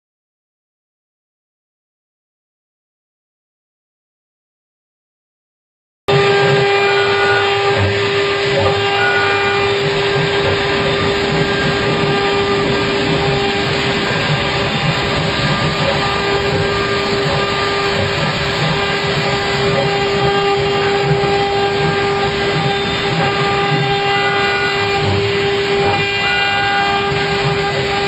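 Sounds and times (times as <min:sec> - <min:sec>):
woodworking machine humming: 0:06.1 - 0:28.0.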